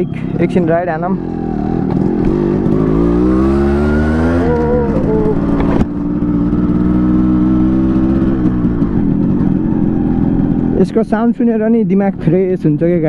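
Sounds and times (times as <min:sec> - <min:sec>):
two-stroke engine revving: 0:00.0 - 0:11.4.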